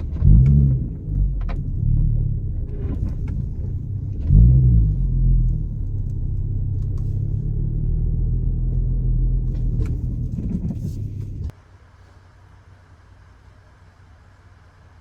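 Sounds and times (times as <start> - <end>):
car engine droning: 0.0 - 11.5
road rumble: 0.0 - 15.0.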